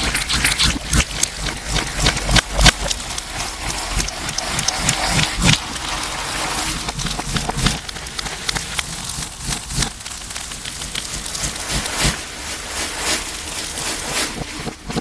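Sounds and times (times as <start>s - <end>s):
slime squishing with wet pops: 0.0s - 5.9s.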